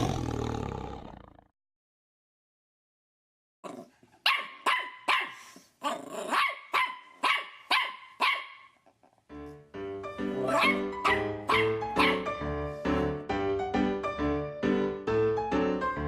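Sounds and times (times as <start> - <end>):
dog barking: 4.2 - 5.5, 6.2 - 8.8, 10.4 - 12.3
piano music: 9.3 - 16.0.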